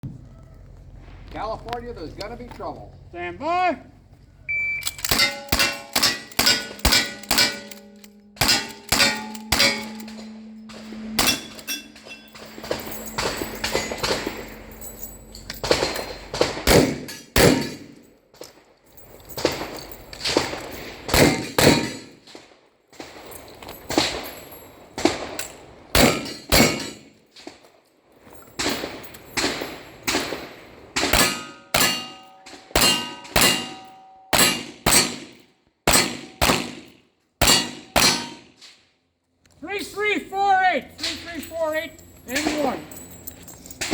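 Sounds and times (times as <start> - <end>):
steel targets clanging: 4.5 - 22.4, 23.0 - 27.5, 28.4 - 38.8, 39.7 - 43.9
gunshots: 4.8 - 14.4, 15.6 - 18.0, 20.3 - 22.2, 25.0 - 27.0, 28.7 - 38.4
rapid gunshots: 16.4 - 17.7.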